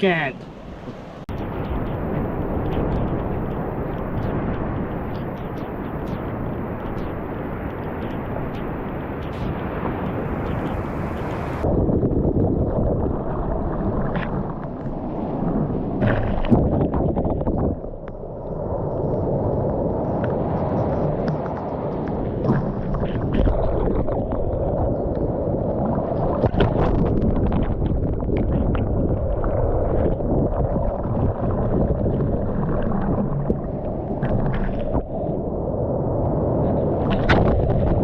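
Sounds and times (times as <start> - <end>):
ocean surf: 0.0 - 17.2
wind rumbling on microphone: 0.0 - 38.0.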